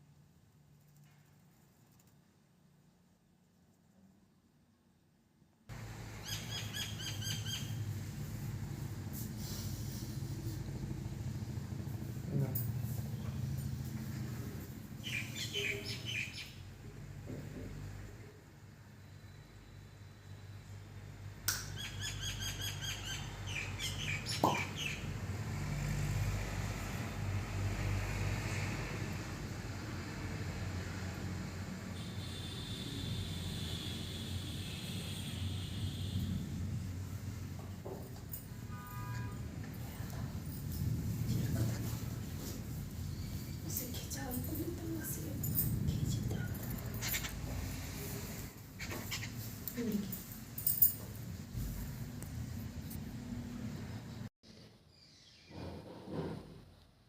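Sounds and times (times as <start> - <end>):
bird chirping: 6.2 - 7.8, 15.0 - 16.6, 21.7 - 25.0.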